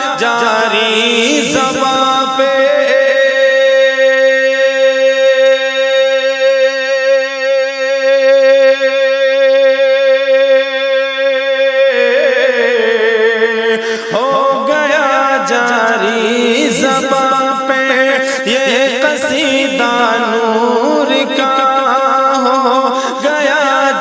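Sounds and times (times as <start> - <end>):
backing voices singing: 0.0 - 3.6
person singing with vibrato: 0.0 - 24.0.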